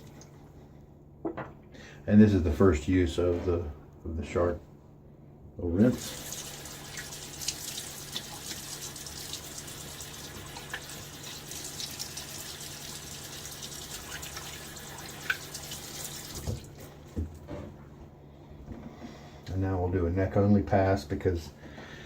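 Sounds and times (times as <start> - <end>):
tap water running into sink: 5.8 - 17.5
water dripping: 6.0 - 17.4.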